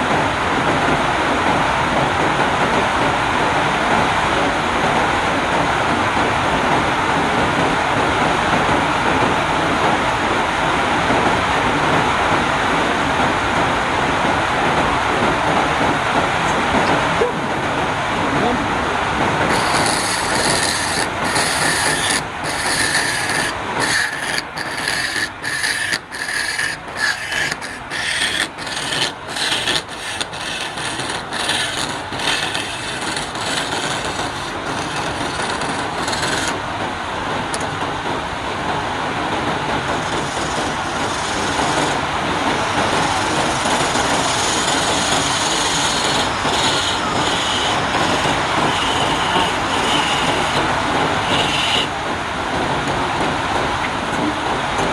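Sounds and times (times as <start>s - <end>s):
wood scraping on a lathe: 19.3s - 36.6s, 40.0s - 52.0s.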